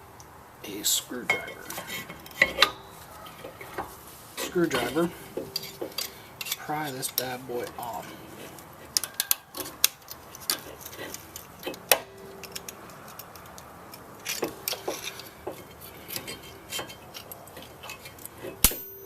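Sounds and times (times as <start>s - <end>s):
metal clicks and clinks: 9.0s - 19.0s.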